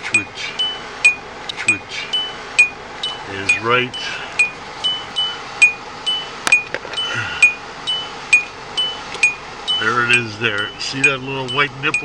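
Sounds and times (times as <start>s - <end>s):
car warning chime: 0.0s - 12.0s.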